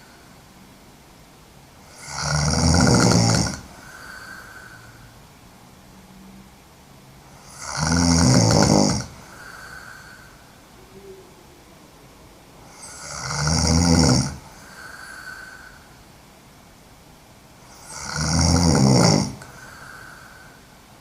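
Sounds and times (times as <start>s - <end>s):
soft breath: 0.0s - 0.7s, 3.7s - 5.3s, 9.1s - 12.8s, 14.5s - 16.1s, 19.4s - 21.0s
woman snoring: 1.8s - 5.0s, 7.4s - 10.4s, 12.6s - 15.9s, 17.6s - 20.6s.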